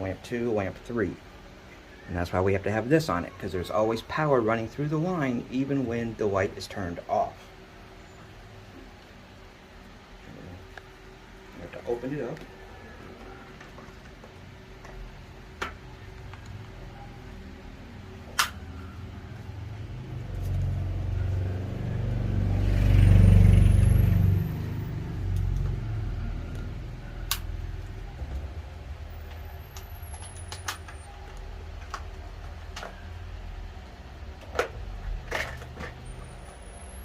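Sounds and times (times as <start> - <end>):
motor vehicle passing: 17.4 - 29.8.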